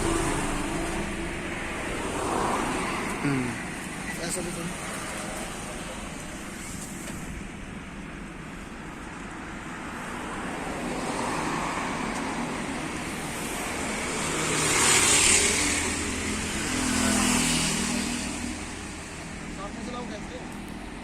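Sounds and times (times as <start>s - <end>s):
low engine hum: 0.0s - 10.0s
vehicles passing by: 0.0s - 21.0s.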